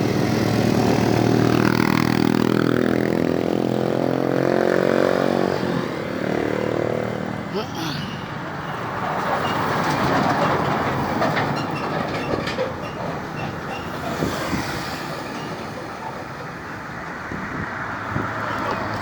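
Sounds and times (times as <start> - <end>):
heavy vehicle passing: 0.0 - 19.0.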